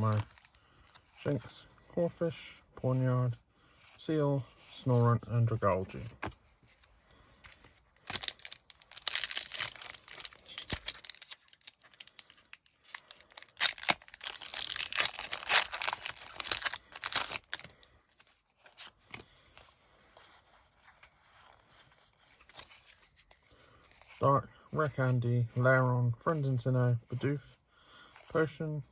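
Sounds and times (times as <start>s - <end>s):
foil wrapper tearing and crinkling: 8.0s - 17.7s.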